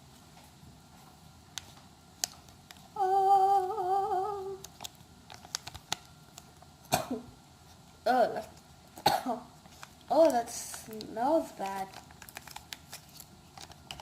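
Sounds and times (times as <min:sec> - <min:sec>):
girl humming: 0:03.0 - 0:04.6.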